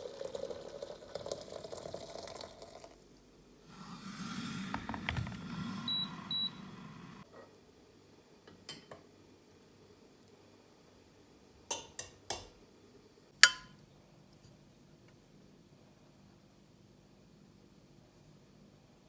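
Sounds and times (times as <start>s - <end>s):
dishes clinking: 13.4s - 13.8s.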